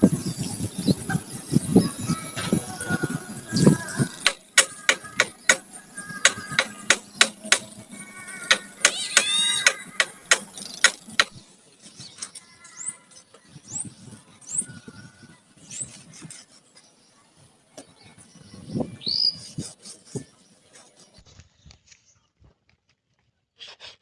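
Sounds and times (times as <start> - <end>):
loud rising bird call: 3.8 - 11.3
sharp knocks: 4.2 - 7.8, 8.4 - 11.4.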